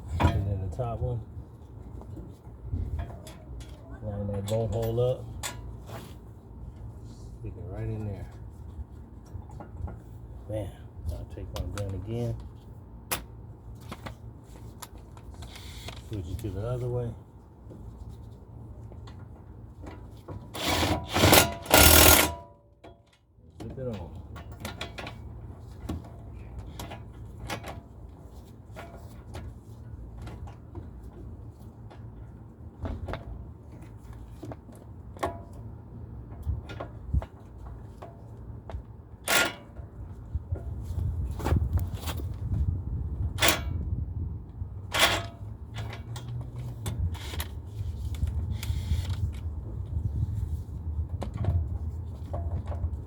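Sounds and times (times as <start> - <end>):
metallic tool clicks and clanks: 20.6 - 22.5.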